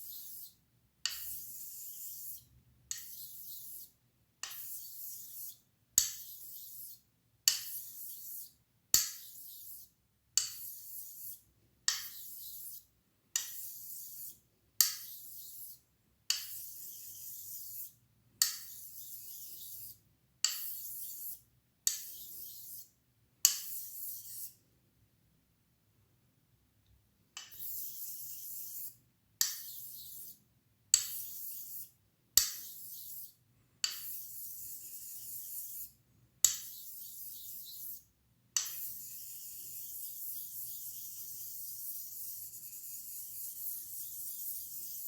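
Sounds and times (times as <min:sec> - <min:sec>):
razor blade scraping on whetstone: 0:00.0 - 0:24.6, 0:27.4 - 0:30.4, 0:31.0 - 0:38.0.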